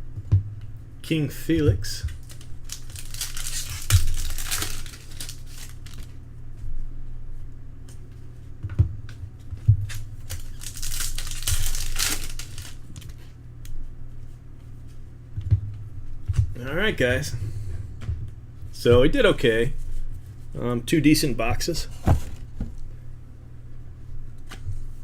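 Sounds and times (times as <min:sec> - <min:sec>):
card pack wrappers crinkling: 0:01.9 - 0:06.1, 0:09.9 - 0:13.3.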